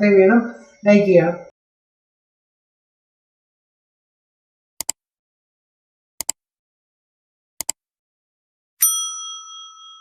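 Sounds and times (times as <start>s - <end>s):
bright bell ding: 8.8s - 10.0s.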